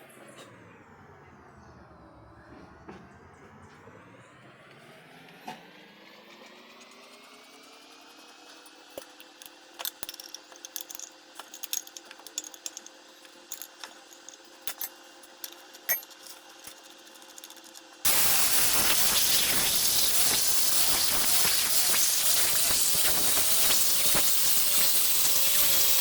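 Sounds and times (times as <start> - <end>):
metallic clinks and ticks: 9.0 - 26.0
lathe humming: 13.5 - 26.0
loud steady hiss: 18.1 - 26.0.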